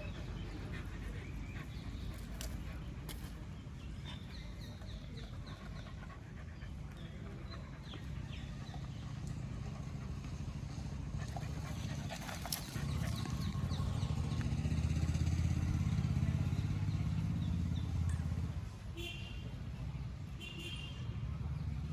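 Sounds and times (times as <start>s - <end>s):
vehicle engine running: 7.9s - 18.7s.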